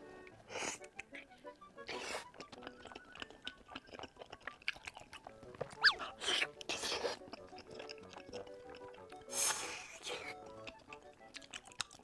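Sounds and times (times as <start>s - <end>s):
person chewing food: 0.1s - 12.0s.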